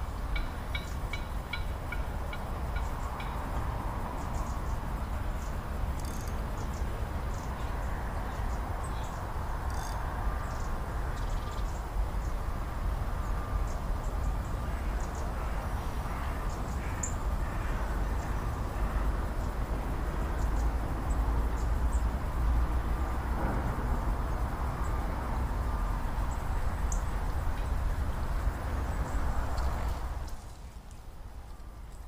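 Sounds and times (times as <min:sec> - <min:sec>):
faint bird calls: 0:13.2 - 0:19.6.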